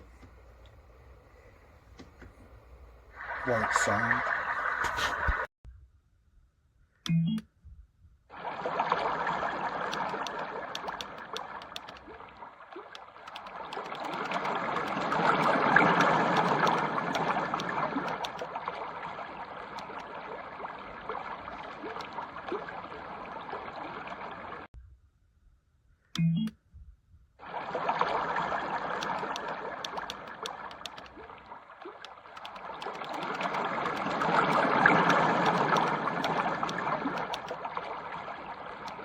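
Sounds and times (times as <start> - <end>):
running water sound from speaker: 3.1 - 5.5, 12.9 - 18.5, 28.9 - 31.3, 32.0 - 37.8.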